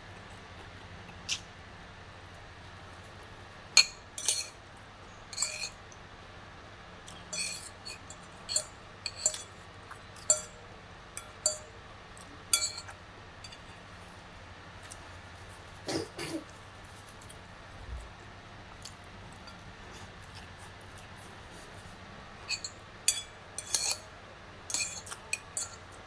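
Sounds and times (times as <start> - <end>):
steady low hum: 0.0 - 26.0
cutlery clinking against a dish: 3.8 - 4.6, 5.3 - 5.8, 7.1 - 13.7, 22.4 - 26.0.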